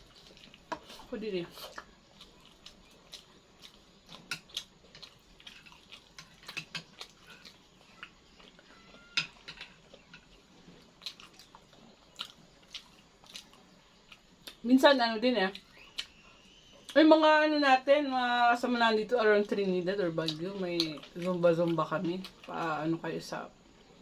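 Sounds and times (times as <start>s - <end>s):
people chewing and biting: 0.0s - 14.6s.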